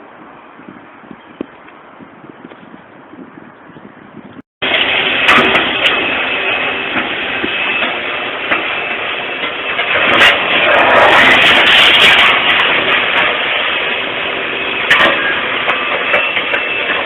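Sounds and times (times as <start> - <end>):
heavy engine running: 4.6 - 17.0
knocks and clatter: 4.6 - 17.0.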